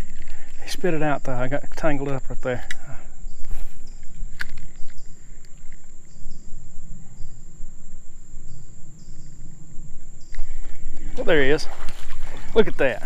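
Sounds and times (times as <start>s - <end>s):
insect chirps: 0.0s - 13.0s
high-pitched insect buzz: 2.8s - 11.1s.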